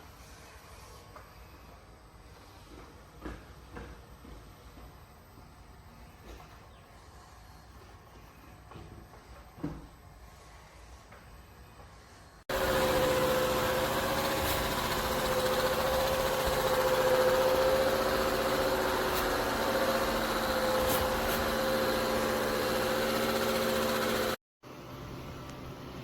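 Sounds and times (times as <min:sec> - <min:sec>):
robot vacuum motor whine: 0:12.5 - 0:24.4.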